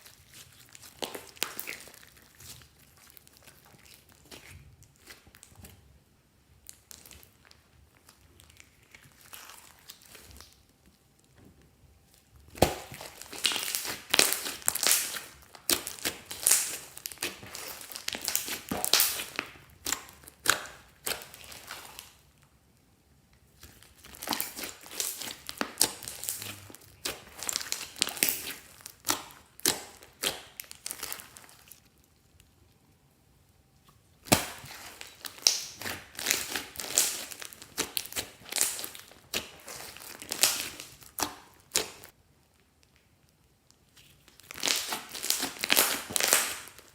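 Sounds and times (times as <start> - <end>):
slime squished by hand: 0.0 - 5.9, 6.6 - 10.9, 12.1 - 22.4, 23.4 - 32.4, 33.8 - 42.2, 43.8 - 46.9.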